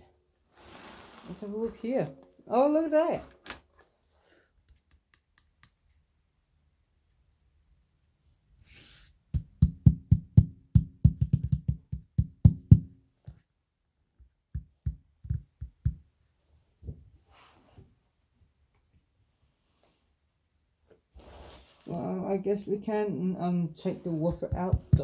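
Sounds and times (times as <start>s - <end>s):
hollow knocking on loudspeaker: 24.5s - 25.0s.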